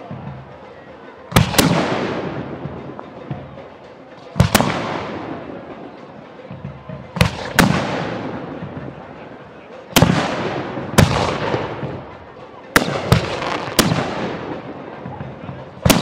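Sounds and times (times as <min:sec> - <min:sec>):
fireworks bangs with echo: 0:01.3 - 0:02.8, 0:04.4 - 0:05.4, 0:07.2 - 0:08.6, 0:10.0 - 0:12.0, 0:12.7 - 0:16.0.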